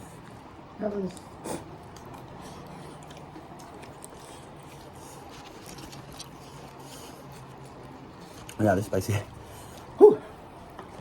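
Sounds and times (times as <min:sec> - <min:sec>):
chewing: 0:00.0 - 0:08.7.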